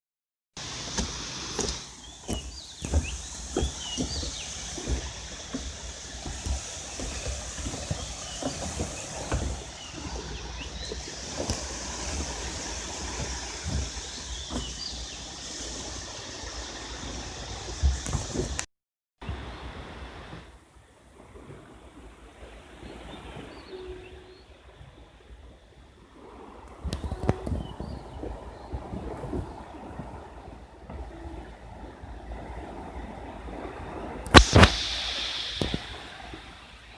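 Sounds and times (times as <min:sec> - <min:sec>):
water splashes: 0:00.6 - 0:36.9
waves lapping at shore: 0:00.6 - 0:36.9
low rumble: 0:34.4 - 0:36.9.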